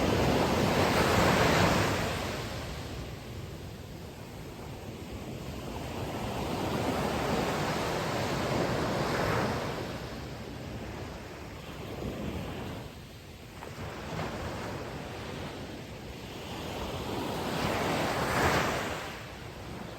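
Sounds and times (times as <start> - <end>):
ocean waves breaking: 0.0 - 3.3.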